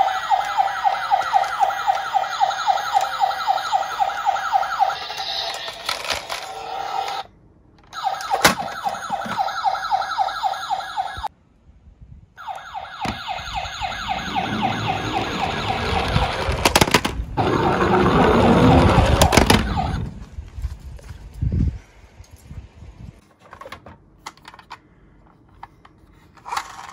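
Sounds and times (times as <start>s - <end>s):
toy siren warbling yelp: 0.0s - 7.2s, 7.9s - 11.3s, 12.4s - 16.6s, 17.4s - 20.1s
toy cars rolling and rattling: 0.3s - 9.4s, 14.8s - 20.0s, 23.2s - 26.9s.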